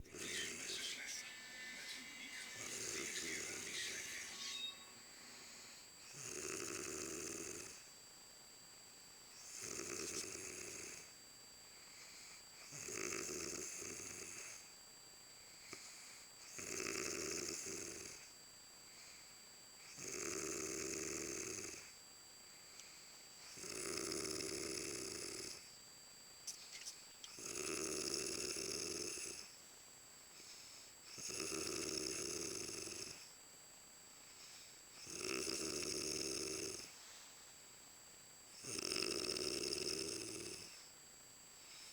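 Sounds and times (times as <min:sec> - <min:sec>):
woman snoring: 0:04.7 - 0:07.8, 0:09.5 - 0:11.1, 0:12.7 - 0:14.4, 0:16.6 - 0:18.2, 0:20.0 - 0:21.8, 0:23.6 - 0:25.6, 0:27.4 - 0:29.4, 0:31.2 - 0:33.2, 0:35.0 - 0:36.9, 0:38.6 - 0:40.7.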